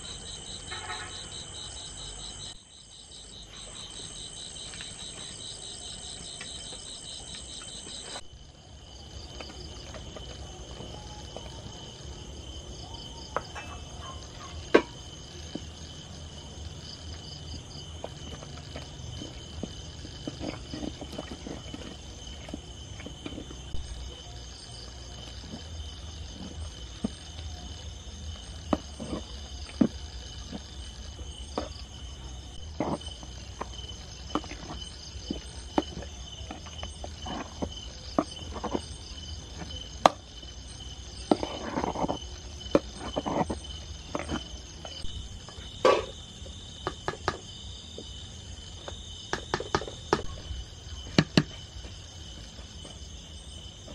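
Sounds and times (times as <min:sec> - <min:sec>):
insects chirring: 0:00.0 - 0:53.9.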